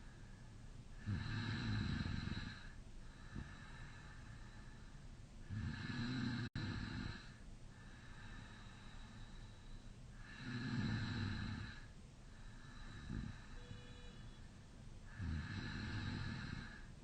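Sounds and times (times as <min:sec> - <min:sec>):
quiet breathing: 0:00.0 - 0:17.0
man snoring: 0:01.0 - 0:02.7, 0:05.5 - 0:07.4, 0:10.2 - 0:11.9, 0:12.8 - 0:13.9, 0:15.1 - 0:16.9.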